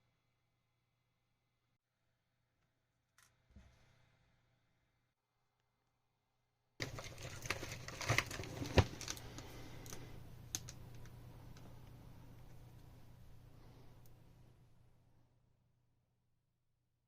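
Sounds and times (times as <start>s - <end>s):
low hum and hiss: 6.8s - 15.4s.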